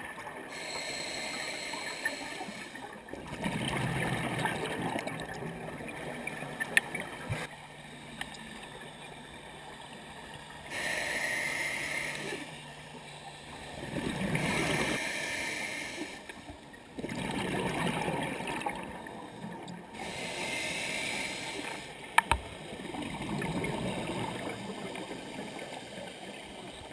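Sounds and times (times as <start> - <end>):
scuba regulator hissing inhale: 0.5 - 2.9, 10.6 - 16.6, 20.0 - 22.1
exhaled bubbles gurgling: 1.7 - 7.6, 13.5 - 15.0, 16.8 - 20.2, 21.8 - 26.2.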